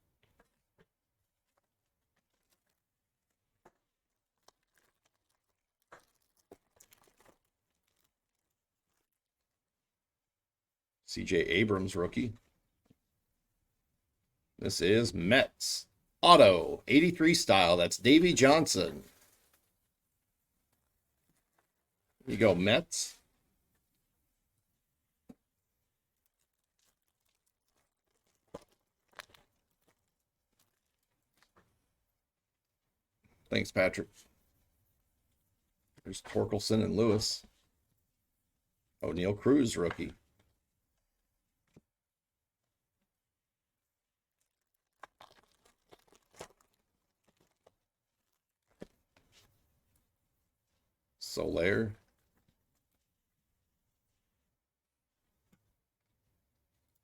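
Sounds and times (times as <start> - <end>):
cards and foil wrappers crinkling: 1.5 - 9.2, 44.5 - 48.9.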